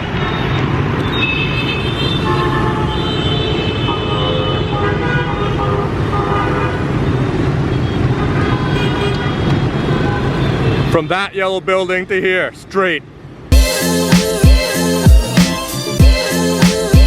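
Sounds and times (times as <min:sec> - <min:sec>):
vehicle horns beeping: 0:00.0 - 0:07.2, 0:07.8 - 0:10.9
traffic engines and road noise: 0:00.0 - 0:13.6.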